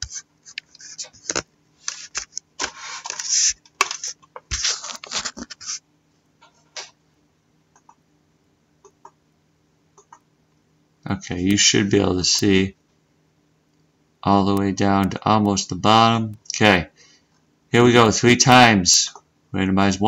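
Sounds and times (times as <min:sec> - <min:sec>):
handling scrapes and rustles: 0:00.0 - 0:05.8.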